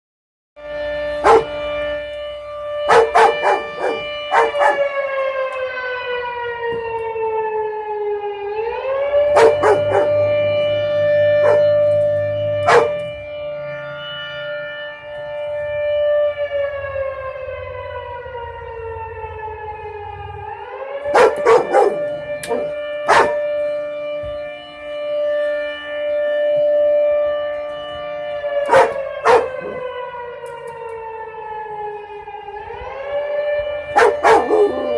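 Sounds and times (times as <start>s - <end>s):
air raid siren wailing: 0.6s - 34.9s
dog barking: 1.2s - 1.6s, 2.9s - 4.9s, 9.4s - 10.2s, 11.4s - 11.7s, 12.6s - 13.0s, 21.1s - 23.4s, 28.7s - 29.8s, 34.0s - 34.9s.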